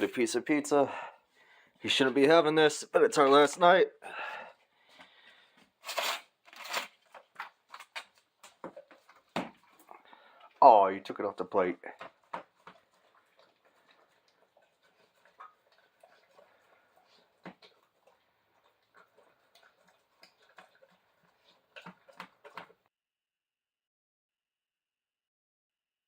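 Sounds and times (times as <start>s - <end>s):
dog eating clicks and smacks: 11.9s - 22.8s.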